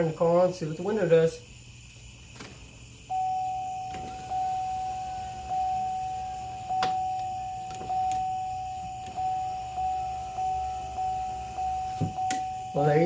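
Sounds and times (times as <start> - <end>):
car warning chime dinging: 3.1 - 13.0.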